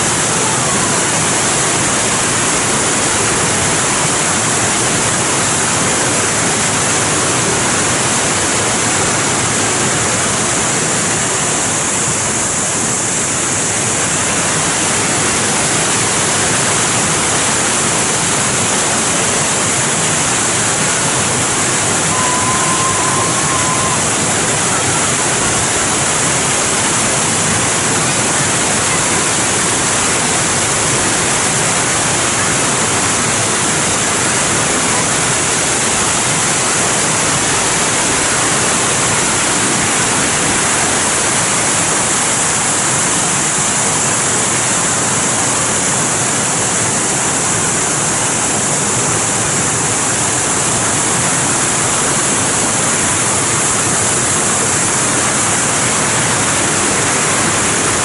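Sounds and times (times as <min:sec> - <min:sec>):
rush of falling water: 0:00.0 - 0:58.0.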